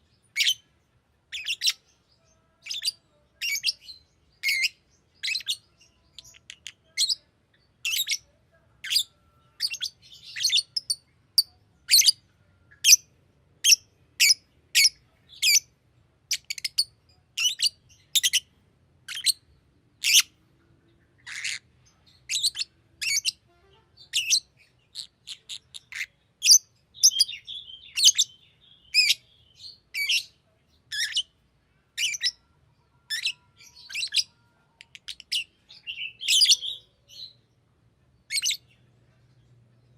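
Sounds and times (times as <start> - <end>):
bird chirping: 0.0 - 39.9
bird warbling chatter: 21.2 - 21.7.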